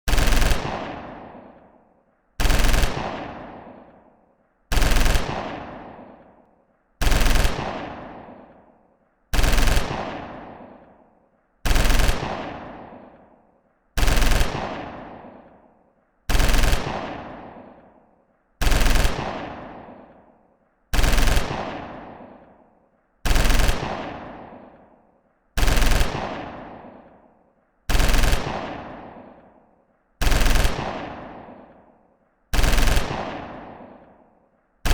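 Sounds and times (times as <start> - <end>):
machine gun bursts echoing: 0.1 - 1.0, 2.4 - 3.4, 4.7 - 5.7, 7.0 - 7.9, 9.4 - 10.2, 11.7 - 12.5, 14.0 - 14.6, 18.6 - 19.4, 21.0 - 21.8, 23.3 - 24.0, 25.6 - 26.4, 27.9 - 28.8, 30.2 - 31.2, 32.6 - 33.7.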